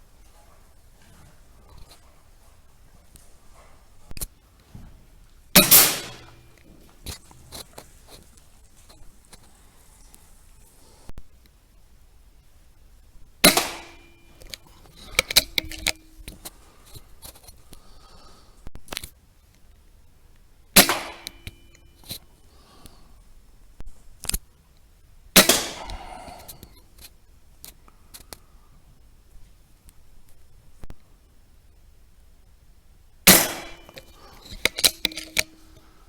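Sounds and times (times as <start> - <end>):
rifle shots: 5.6 - 6.6, 13.4 - 14.5, 20.8 - 21.7, 25.4 - 26.4, 33.3 - 35.6.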